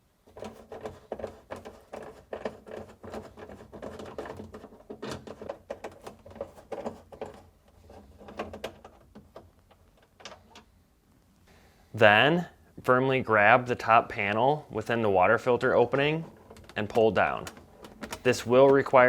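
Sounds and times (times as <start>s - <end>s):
nut driver clicking and scraping: 16.2s - 18.9s.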